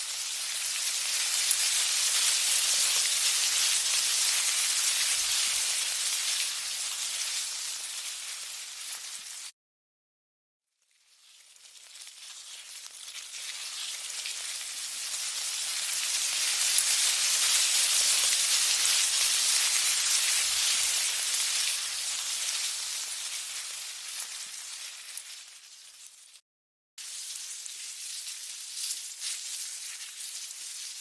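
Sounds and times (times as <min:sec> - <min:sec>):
ants swarming crackling hiss: 0:00.0 - 0:09.5, 0:13.3 - 0:25.5.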